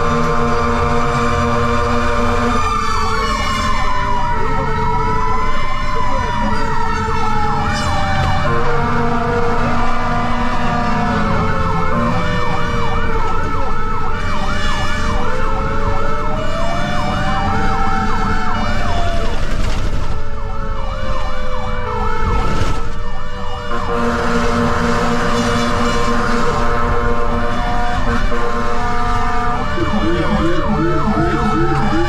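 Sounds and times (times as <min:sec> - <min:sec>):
engine and road rumble: 0:00.0 - 0:32.0
fire engine sirens: 0:00.0 - 0:32.0
steady horn tone: 0:26.0 - 0:32.0.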